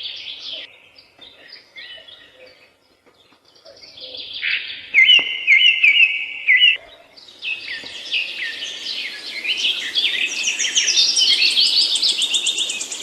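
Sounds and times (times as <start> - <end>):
songbirds chirping and singing: 0.0 - 13.0.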